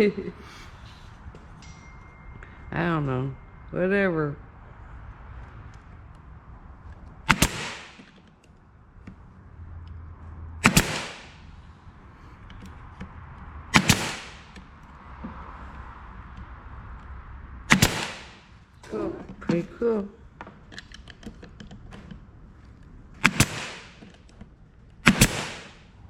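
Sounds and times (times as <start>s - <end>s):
nail gun firing with hiss: 7.3s - 8.2s, 10.6s - 11.4s, 13.7s - 14.6s, 17.7s - 18.6s, 23.2s - 24.2s, 25.0s - 26.0s.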